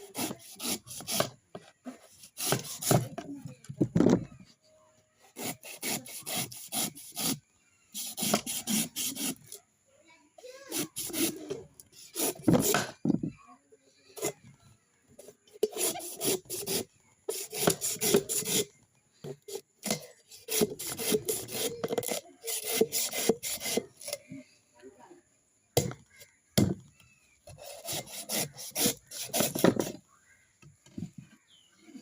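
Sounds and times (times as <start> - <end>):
rhythmic scraping strokes: 19.3 - 24.2, 27.5 - 30.0.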